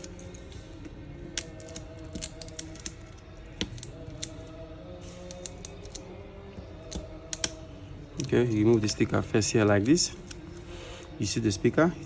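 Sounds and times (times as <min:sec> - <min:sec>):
small tool clicking: 0:01.4 - 0:03.0, 0:05.2 - 0:06.0, 0:06.8 - 0:07.6
sticker peeling: 0:01.4 - 0:06.2.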